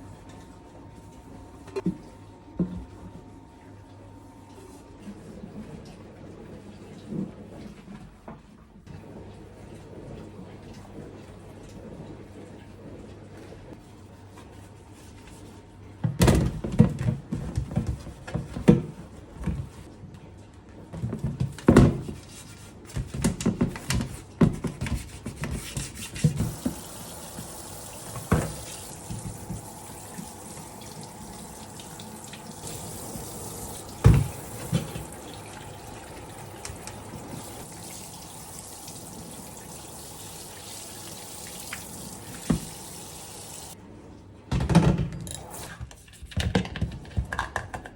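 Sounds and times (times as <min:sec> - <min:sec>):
tap water running: 0:23.0 - 0:43.8.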